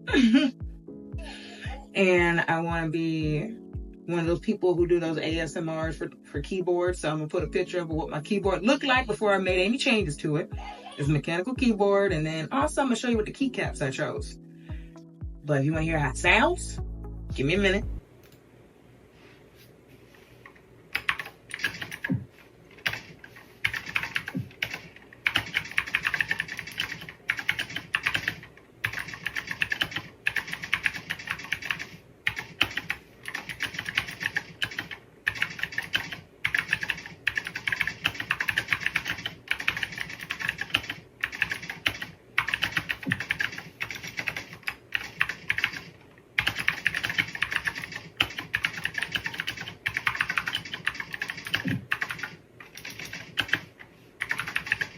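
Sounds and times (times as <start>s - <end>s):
mechanical keyboard typing: 21.0s - 22.2s, 22.8s - 54.9s.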